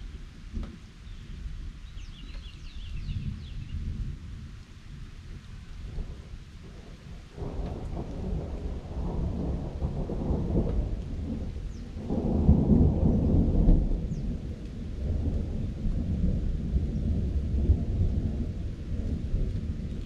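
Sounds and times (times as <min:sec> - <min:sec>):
rain falling: 0:00.0 - 0:20.0
thunder rumbling: 0:05.8 - 0:20.0.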